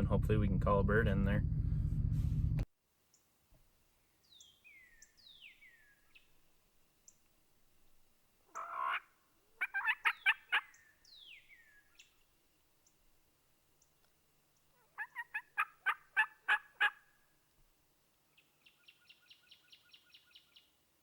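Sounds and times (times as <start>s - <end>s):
turkey gobbling: 8.5s - 10.8s, 14.8s - 17.0s.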